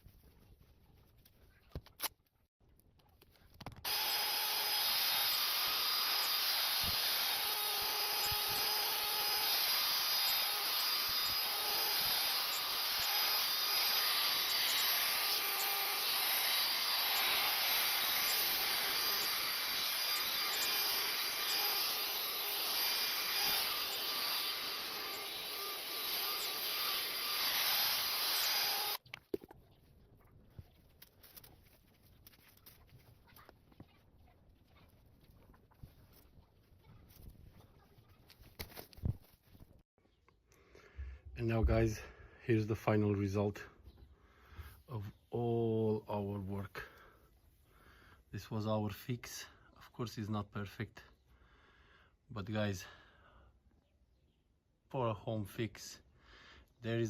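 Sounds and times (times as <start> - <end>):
power tool rubbing car body: 3.9 - 29.0.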